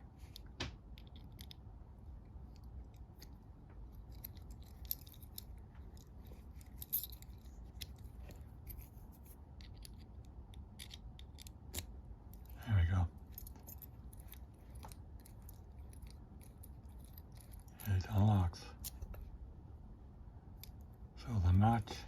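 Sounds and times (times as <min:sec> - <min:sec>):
key clicking and scraping in lock: 0:02.5 - 0:12.6, 0:13.2 - 0:18.0.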